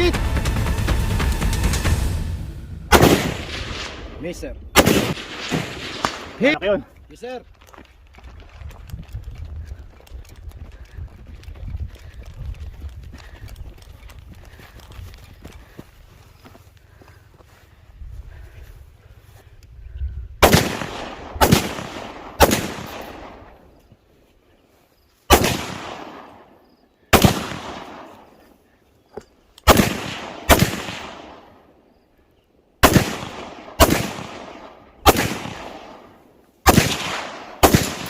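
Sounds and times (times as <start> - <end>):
rifle shots echoing: 2.9 - 6.6, 20.4 - 23.7, 25.3 - 28.4, 29.6 - 31.8, 32.8 - 38.0.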